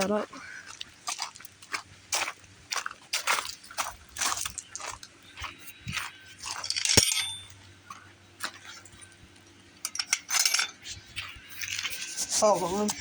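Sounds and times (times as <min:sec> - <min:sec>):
low steady hum: 0:00.0 - 0:13.0
rustling and clattering objects: 0:02.8 - 0:13.0
sharp metallic clink: 0:06.4 - 0:07.6.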